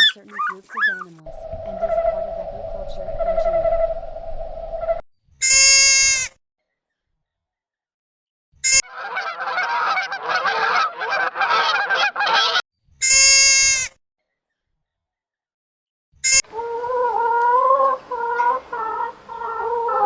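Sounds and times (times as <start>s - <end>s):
geese honking and cackling: 8.7s - 12.6s, 16.3s - 20.0s.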